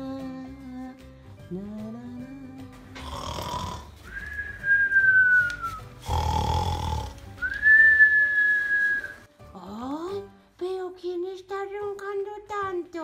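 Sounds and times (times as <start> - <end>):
cartoon snoring with whistle: 6.0 - 7.1.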